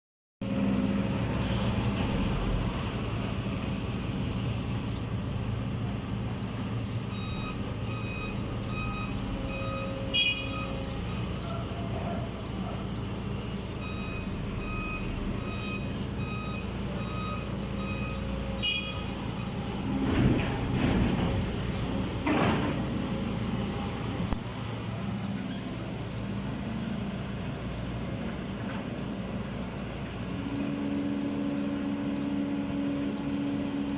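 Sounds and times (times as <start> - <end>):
diesel engine running: 0.4 - 33.9
reversing alarm beeping: 7.0 - 11.8, 12.5 - 19.7.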